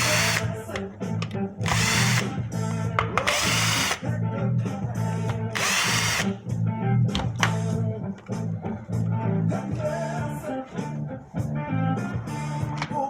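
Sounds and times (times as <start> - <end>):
power drill whirring: 0.0 - 0.6, 1.6 - 2.4, 3.2 - 4.0, 5.5 - 6.4
background music with bass line: 0.0 - 13.0.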